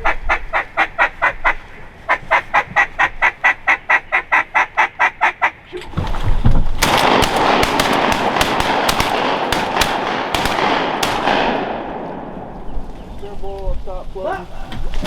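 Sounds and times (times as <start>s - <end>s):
gunshot echo: 6.8s - 12.8s
shotgun blasts: 6.8s - 12.8s.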